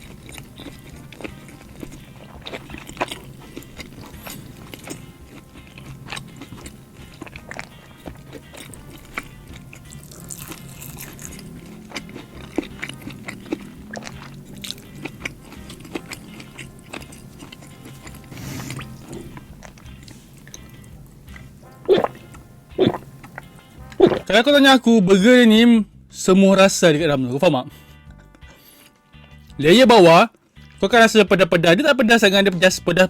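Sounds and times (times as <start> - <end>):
person chewing: 0.0 - 24.4
background music: 0.0 - 33.0.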